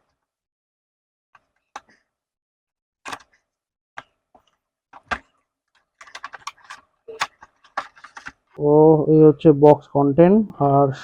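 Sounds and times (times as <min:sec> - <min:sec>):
cardboard rustling: 0:06.0 - 0:08.6.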